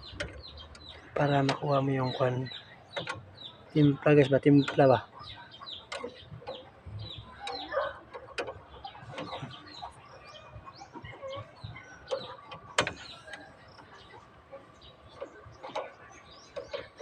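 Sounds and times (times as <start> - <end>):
sharp metallic clicks: 0.0 - 5.0, 5.6 - 10.0, 12.1 - 14.2
chickens clucking and chirping: 0.0 - 17.0.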